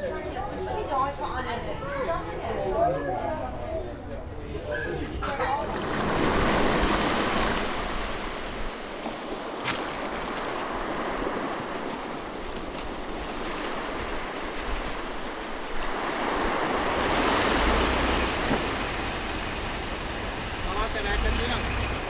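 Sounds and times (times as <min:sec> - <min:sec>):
ocean surf washing onto beach: 0:05.6 - 0:20.7.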